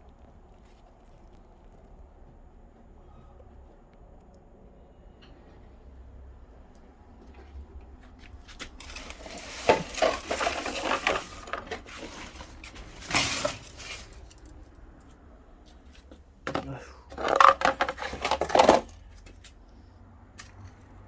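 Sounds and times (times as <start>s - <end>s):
dishes clinking and clattering: 8.8s - 14.5s.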